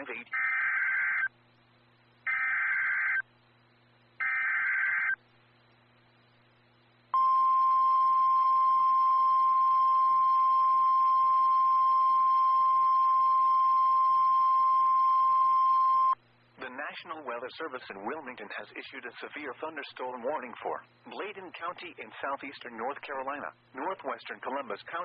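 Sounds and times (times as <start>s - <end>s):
data tone bursts: 7.2s - 16.2s
steady warning alarm tone: 7.2s - 16.2s.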